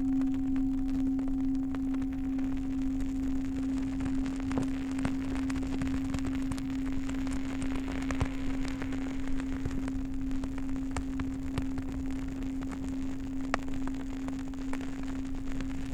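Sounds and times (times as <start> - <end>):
singing bowl drone: 0.0 - 10.3.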